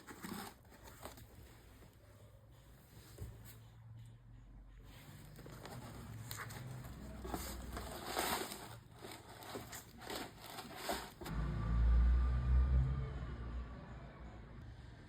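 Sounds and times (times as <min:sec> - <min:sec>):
packaging scraping and crinkling: 0:00.0 - 0:01.6, 0:05.2 - 0:11.3.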